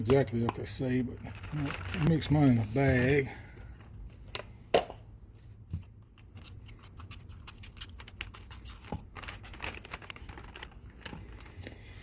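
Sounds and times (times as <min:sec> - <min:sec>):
plastic bag crinkling: 0:01.2 - 0:02.9, 0:07.8 - 0:11.8.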